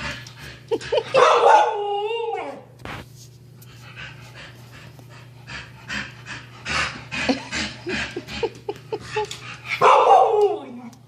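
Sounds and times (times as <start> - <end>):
dog panting: 3.7 - 9.8.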